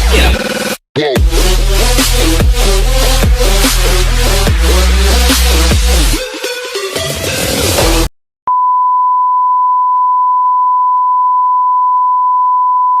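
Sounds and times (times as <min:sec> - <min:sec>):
electronic dance music: 0:00.0 - 0:08.1.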